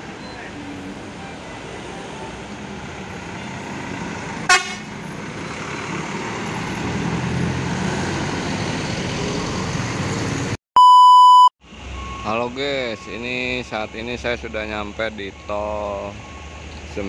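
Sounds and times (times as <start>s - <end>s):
road traffic: 0.0s - 10.6s, 11.3s - 17.0s
vehicle passing with rumble: 1.6s - 10.6s
vehicle horn toot: 4.5s - 4.9s
steady electronic beep tone: 10.8s - 13.2s.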